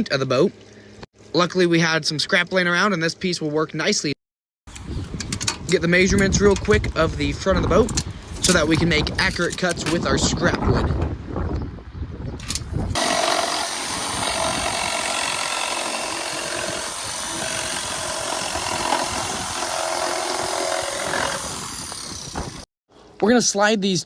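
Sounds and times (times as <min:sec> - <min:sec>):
power saw cutting wood: 0:12.9 - 0:22.7.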